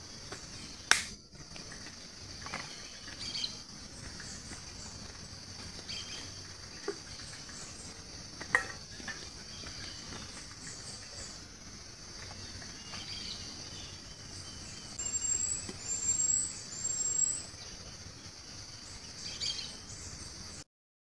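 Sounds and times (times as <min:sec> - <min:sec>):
high-pitched insect drone: 0:00.0 - 0:20.6.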